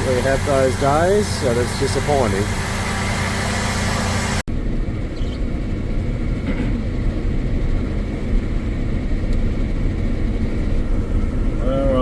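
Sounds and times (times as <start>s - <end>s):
heavy vehicle engine rumbling: 0.0s - 12.0s.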